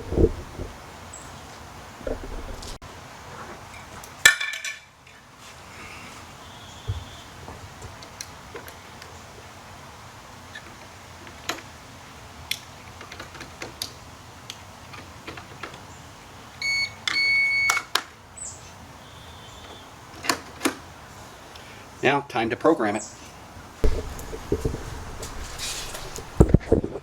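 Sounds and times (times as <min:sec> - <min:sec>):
electronic lock beeps: 0:16.6 - 0:17.8.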